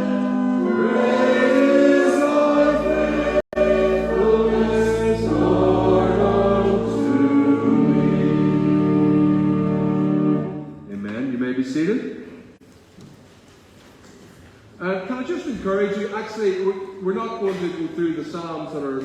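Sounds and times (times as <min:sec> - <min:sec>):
congregation singing a hymn: 0:00.0 - 0:10.6.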